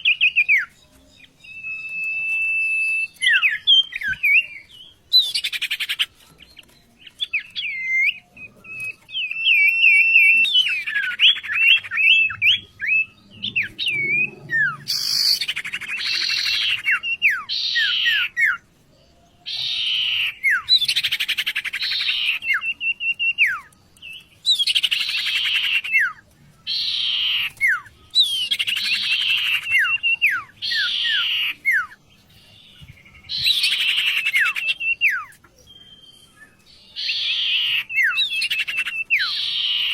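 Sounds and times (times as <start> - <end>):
songbird whistling and trilling: 0.0 - 39.9
bird harsh chattering phrases: 10.3 - 18.6, 24.6 - 30.0.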